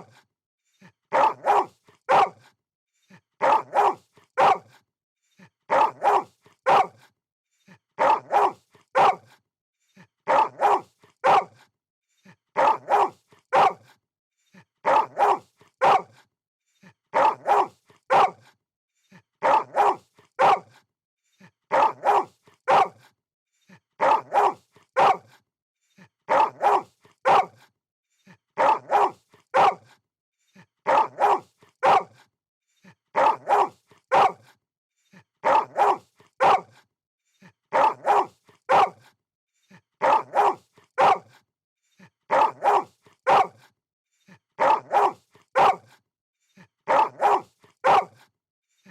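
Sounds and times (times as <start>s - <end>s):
dog barking: 1.1s - 2.5s, 3.4s - 4.8s, 5.7s - 7.1s, 8.0s - 9.4s, 10.3s - 11.6s, 12.6s - 13.9s, 14.8s - 16.2s, 17.1s - 18.5s, 19.4s - 20.8s, 21.7s - 23.1s, 24.0s - 25.4s, 26.3s - 27.7s, 28.6s - 30.0s, 30.8s - 32.3s, 33.1s - 34.6s, 35.4s - 36.8s, 37.7s - 39.1s, 40.0s - 41.4s, 42.3s - 43.7s, 44.6s - 46.0s, 46.9s - 48.3s.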